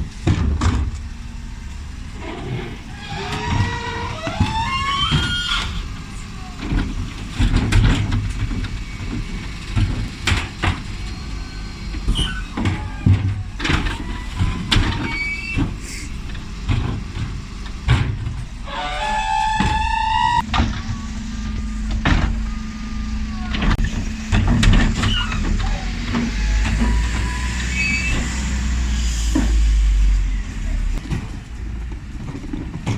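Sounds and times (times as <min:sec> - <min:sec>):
wheelie bins banging and clattering: 0:00.0 - 0:01.2, 0:02.0 - 0:18.7, 0:23.5 - 0:28.5, 0:31.0 - 0:32.9
engine whine driving bin lift: 0:00.0 - 0:32.9
truck engine running: 0:00.0 - 0:32.9.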